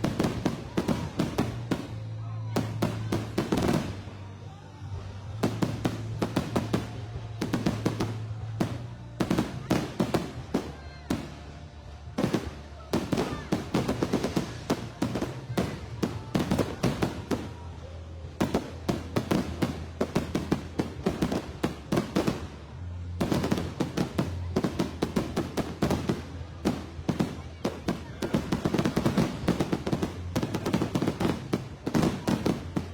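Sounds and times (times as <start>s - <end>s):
fireworks cracks and bangs: 0.0s - 4.2s, 5.0s - 32.9s.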